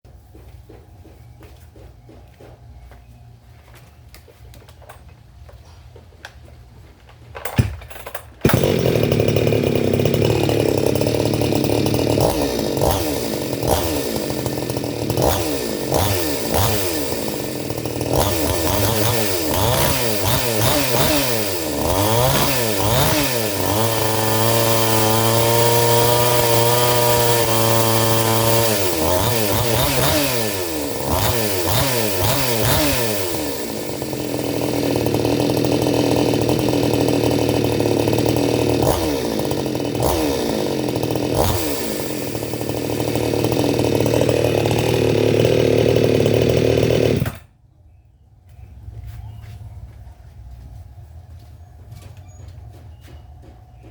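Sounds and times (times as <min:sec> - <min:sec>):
chainsaw starting and revving: 0:07.6 - 0:47.6.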